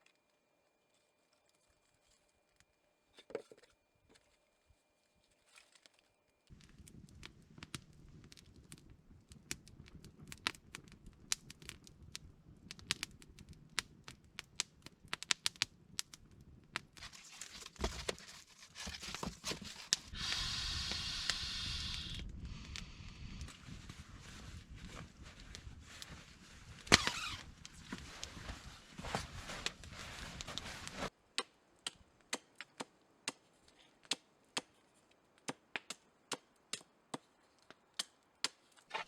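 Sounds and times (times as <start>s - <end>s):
crackling and snapping: 5.4s - 39.0s
hiss burst: 20.1s - 23.5s.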